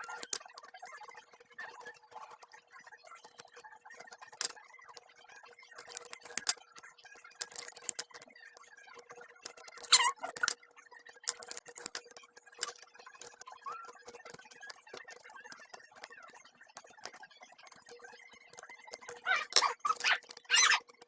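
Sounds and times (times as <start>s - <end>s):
craft materials handled: 0.0s - 0.4s, 9.8s - 10.6s, 19.1s - 20.8s
scissors snipping: 0.0s - 0.4s, 19.2s - 20.8s
brief high squeak: 9.8s - 10.3s, 19.2s - 20.8s.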